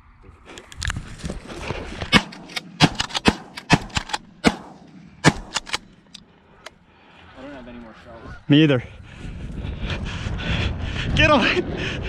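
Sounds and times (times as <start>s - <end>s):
shotgun shots: 2.1s - 5.9s.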